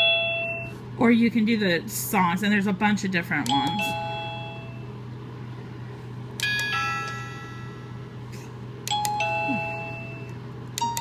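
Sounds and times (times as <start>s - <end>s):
doorbell chime notes: 0.0s - 0.7s, 3.5s - 4.8s, 6.4s - 8.0s, 8.9s - 10.3s.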